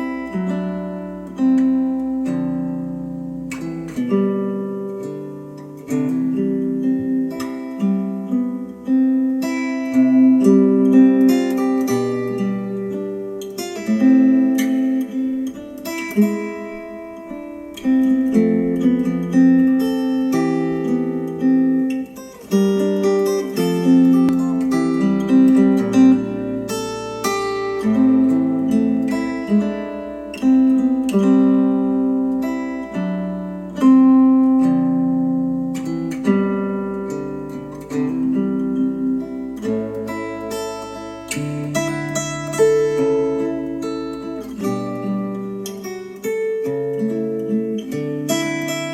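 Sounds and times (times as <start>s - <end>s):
acoustic guitar chords: 0.0s - 48.9s.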